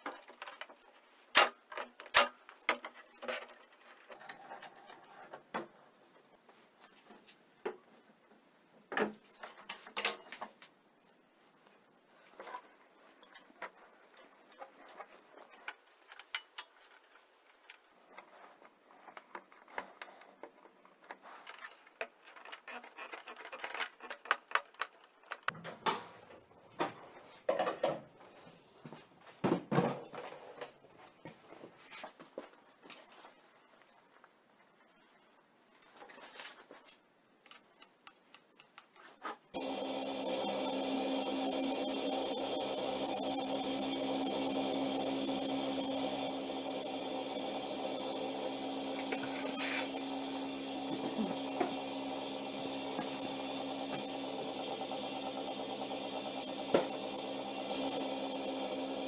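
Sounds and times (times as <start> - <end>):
motor running: 39.6 - 59.0.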